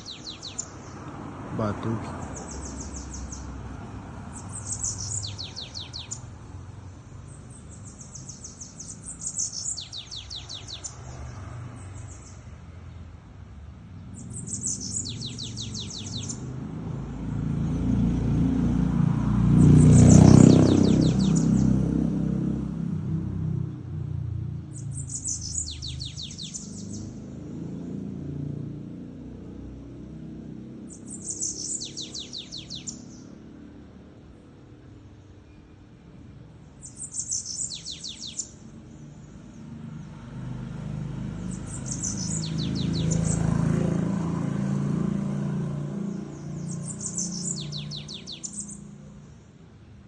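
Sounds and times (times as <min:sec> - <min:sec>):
bird singing fast trilled song: 0:00.0 - 0:01.1, 0:02.2 - 0:03.6, 0:04.3 - 0:06.4, 0:07.1 - 0:13.0, 0:13.9 - 0:17.3, 0:19.6 - 0:21.7, 0:24.6 - 0:28.1, 0:30.8 - 0:33.5, 0:35.4 - 0:40.3, 0:41.4 - 0:43.8, 0:46.0 - 0:49.4.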